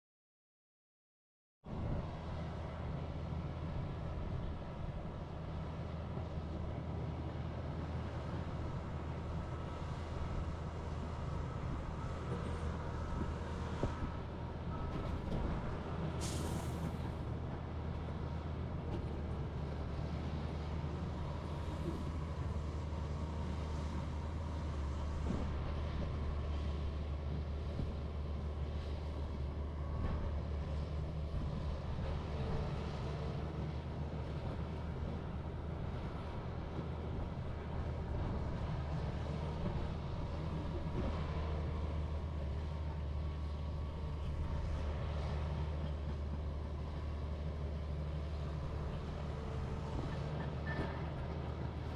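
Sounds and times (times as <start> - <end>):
diesel machinery droning: 1.7 - 51.9
short hiss: 16.2 - 16.8.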